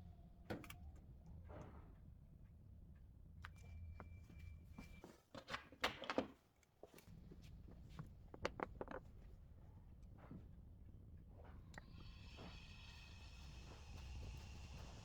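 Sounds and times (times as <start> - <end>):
tools and parts clicking and knocking: 8.3 - 9.1.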